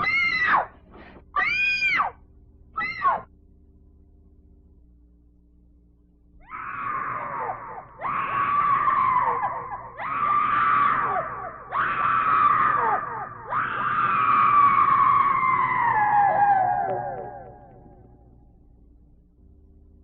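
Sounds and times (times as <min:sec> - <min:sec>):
faint low hum: 0:00.0 - 0:20.0
long high screams: 0:06.4 - 0:17.7.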